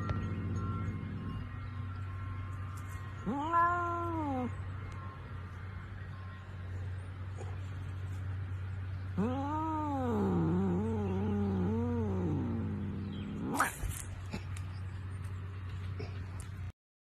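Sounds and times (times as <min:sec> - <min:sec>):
low hum: 0:00.0 - 0:16.7
cat yowling: 0:03.2 - 0:04.6, 0:09.2 - 0:13.8.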